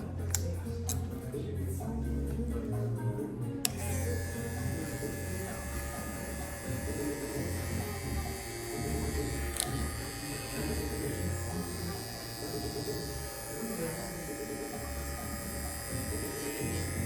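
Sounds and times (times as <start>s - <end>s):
hair clipper buzzing: 3.6s - 17.0s
hair clipper switch click: 3.6s - 17.0s.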